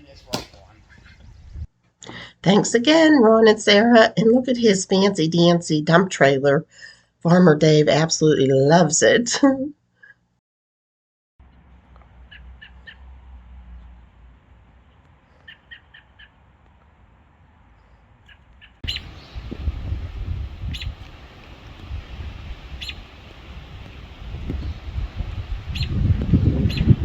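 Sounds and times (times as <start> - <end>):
birds chirping: 0.0 - 1.6, 14.9 - 16.4, 17.8 - 26.0, 26.6 - 27.0
wind rumbling on microphone: 0.0 - 1.7, 16.5 - 27.0.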